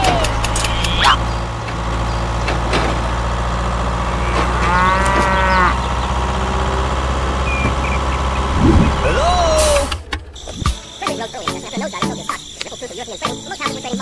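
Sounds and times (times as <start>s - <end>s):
animal-like call: 0.0s - 1.3s, 7.4s - 10.8s
low motor hum: 0.0s - 11.0s.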